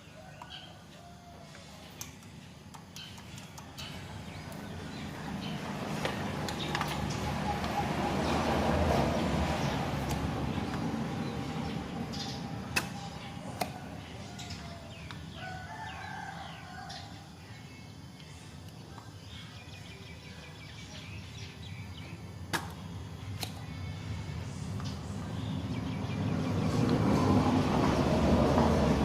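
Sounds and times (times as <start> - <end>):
rooster crowing: 0.0 - 1.8, 13.3 - 17.4.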